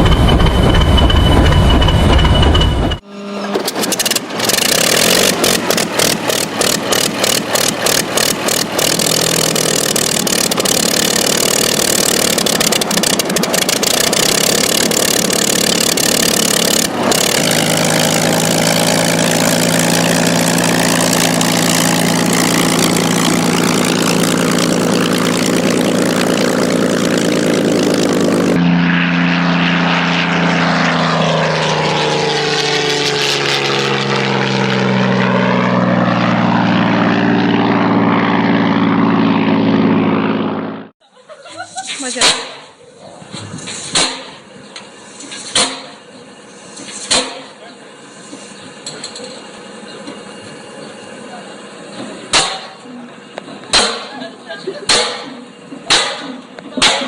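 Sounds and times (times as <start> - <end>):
piston engine starting and running: 0.0 - 28.8, 43.3 - 57.0.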